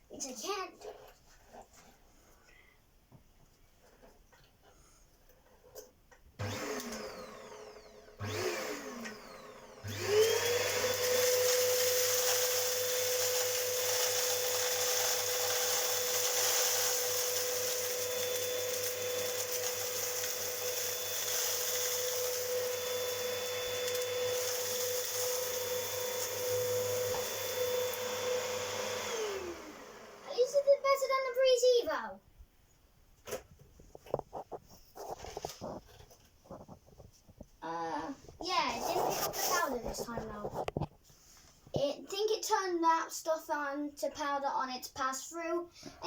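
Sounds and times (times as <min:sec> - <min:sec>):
vacuum cleaner motor whirring: 0:06.4 - 0:31.1.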